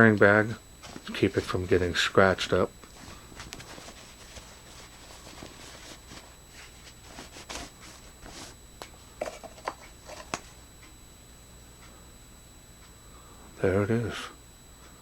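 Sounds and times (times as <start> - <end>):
nylon bag rustling: 2.9 - 8.6.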